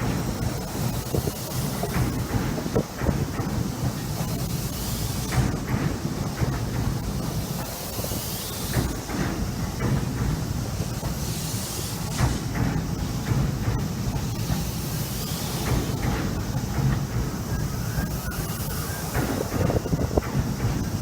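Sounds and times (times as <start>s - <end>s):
electric train rumbling: 0.0s - 21.0s
train wheel clacks: 0.0s - 21.0s.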